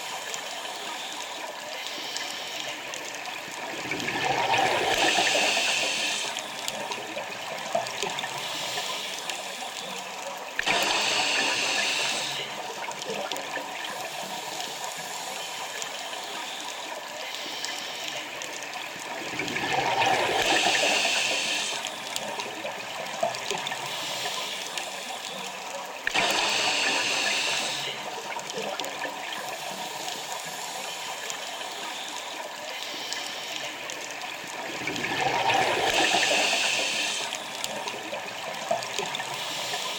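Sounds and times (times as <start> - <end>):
exhaled bubbles rushing: 3.5 - 8.2, 18.9 - 23.8, 34.4 - 39.4
watery hiss: 3.6 - 6.9, 8.2 - 10.0, 10.6 - 12.7, 19.7 - 22.4, 23.7 - 25.5, 26.1 - 28.2, 34.8 - 39.9.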